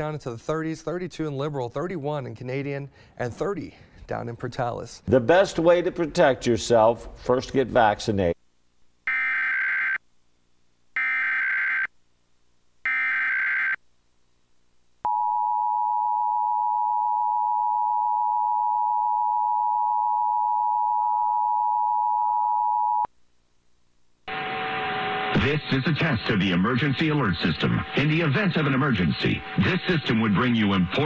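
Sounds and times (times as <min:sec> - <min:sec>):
harsh electronic data chirps: 0:24.3 - 0:31.0.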